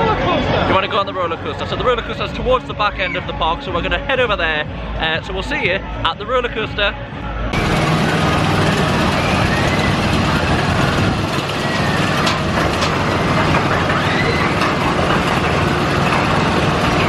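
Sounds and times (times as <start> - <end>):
wind rush and rumble: 7.6 - 17.0
faint high squeals: 13.8 - 14.7.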